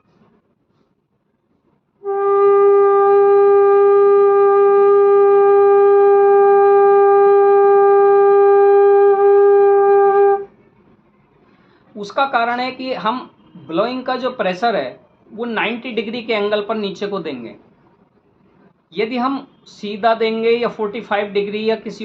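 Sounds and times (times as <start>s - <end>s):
flute long steady note: 2.0s - 11.6s.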